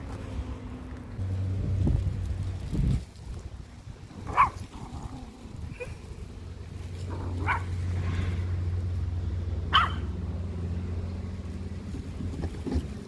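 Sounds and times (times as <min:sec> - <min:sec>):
low steady rumble: 0:00.0 - 0:13.0
dog barking: 0:04.3 - 0:04.6, 0:07.4 - 0:07.7, 0:09.7 - 0:10.1.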